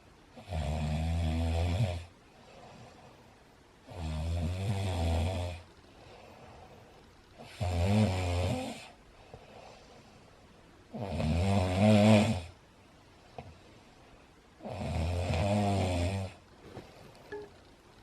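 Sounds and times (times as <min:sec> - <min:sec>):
man snoring loudly: 0:00.4 - 0:02.1, 0:03.9 - 0:05.6, 0:07.4 - 0:08.9, 0:10.9 - 0:12.5, 0:14.6 - 0:16.4.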